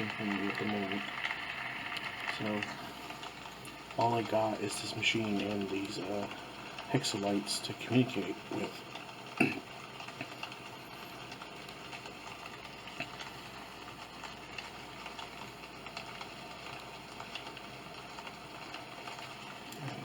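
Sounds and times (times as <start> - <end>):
sound machine steady noise: 0.0 - 20.0.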